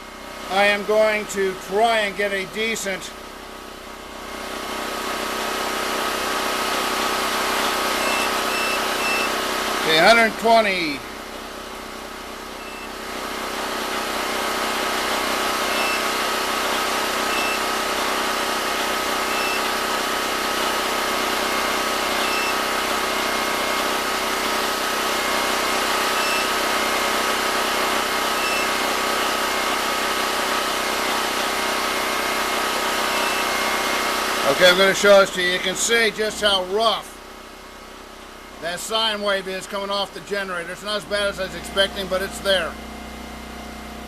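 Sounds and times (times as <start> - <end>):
generator engine running: 0.0 - 44.0.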